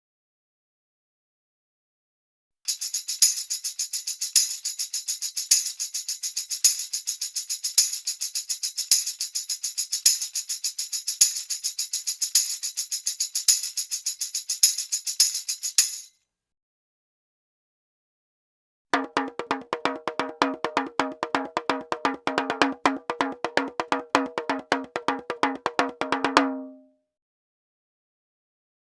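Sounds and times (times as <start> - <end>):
tambourine jingling rhythm: 2.7 - 16.1, 19.0 - 26.4.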